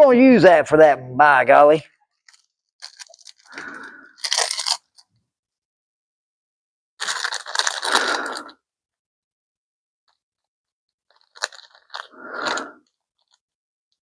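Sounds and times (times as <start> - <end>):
rustling crinkling handling noise: 2.1 - 5.0, 7.0 - 8.4, 11.1 - 12.6.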